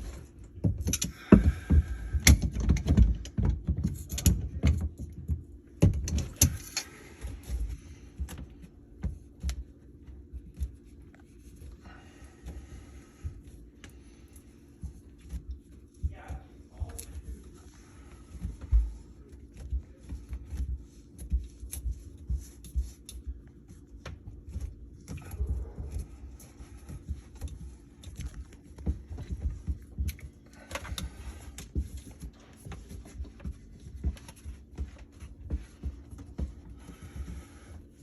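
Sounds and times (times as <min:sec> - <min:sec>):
steady low hum: 0:00.0 - 0:38.0.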